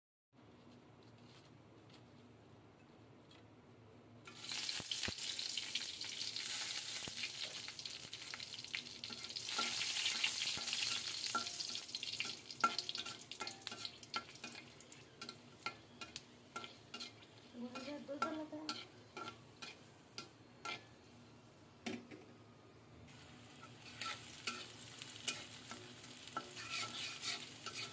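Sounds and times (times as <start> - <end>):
food sizzling in hot oil: 4.3 - 21.0, 23.1 - 27.9
spatula scraping a pan: 9.0 - 21.0, 23.1 - 27.9.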